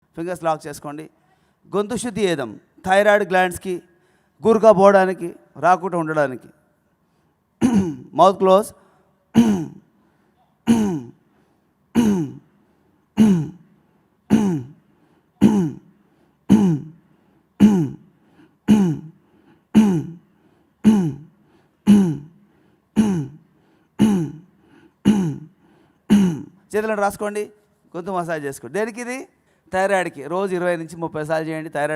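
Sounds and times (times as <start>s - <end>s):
man clearing throat with grunts: 7.6s - 8.2s, 9.3s - 9.9s, 10.6s - 11.2s, 11.9s - 12.5s, 13.2s - 13.7s, 14.3s - 14.8s, 15.4s - 15.9s, 16.5s - 17.0s, 17.6s - 26.6s.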